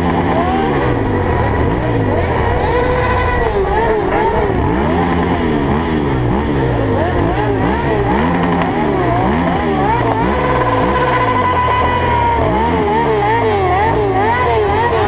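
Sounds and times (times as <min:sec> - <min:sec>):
motorcycle engines revving: 0:00.0 - 0:15.0
steady high tone: 0:00.6 - 0:06.2.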